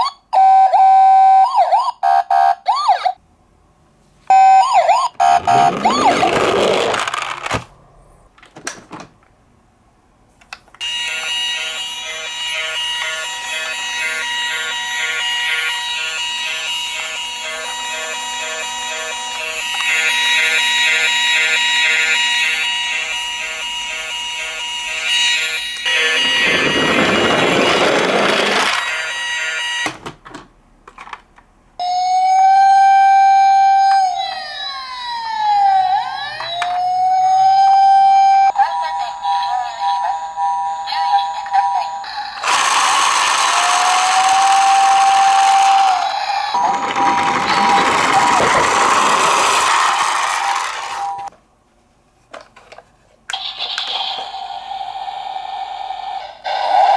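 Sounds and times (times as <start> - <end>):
toy siren tones: 0.0 - 3.2, 4.3 - 7.3, 10.8 - 30.0, 31.8 - 51.3
rushing noise: 46.7 - 51.0.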